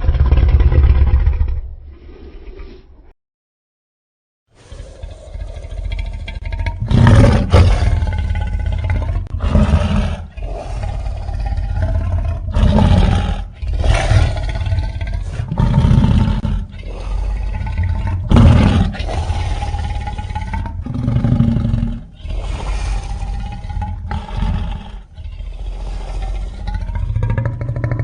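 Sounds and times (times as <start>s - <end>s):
deep monster roars: 4.6s - 28.0s.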